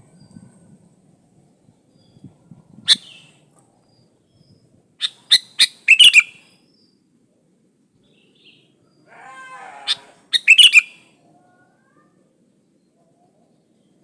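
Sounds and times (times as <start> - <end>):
buzzy grating bird call: 9.2 - 10.9
bird warbled phrase: 9.4 - 10.8.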